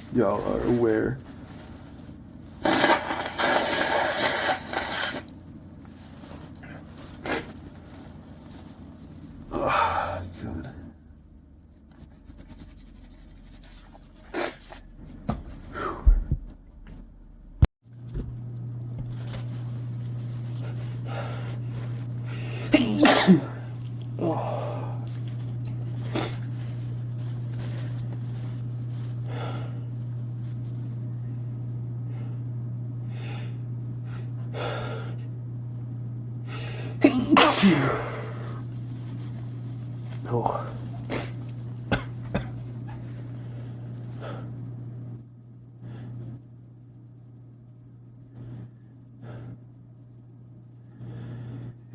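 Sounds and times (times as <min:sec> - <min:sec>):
steady low hum: 0:00.0 - 0:51.9
man sneezing: 0:22.6 - 0:23.6, 0:37.0 - 0:38.6.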